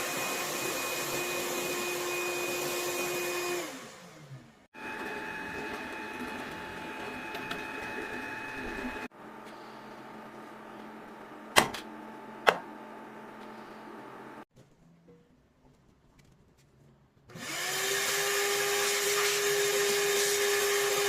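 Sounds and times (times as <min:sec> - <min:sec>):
vacuum cleaner motor whine: 0:00.0 - 0:09.4, 0:17.3 - 0:21.0.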